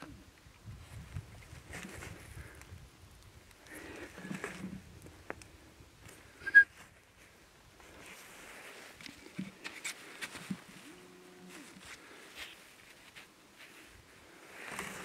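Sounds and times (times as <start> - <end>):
faint rustling: 3.5 - 15.0
short sharp animal call: 6.4 - 6.7.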